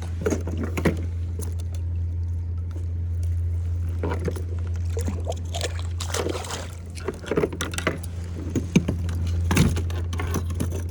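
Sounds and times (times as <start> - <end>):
steady low hum: 0.0 - 10.9
water splashing: 3.2 - 7.4.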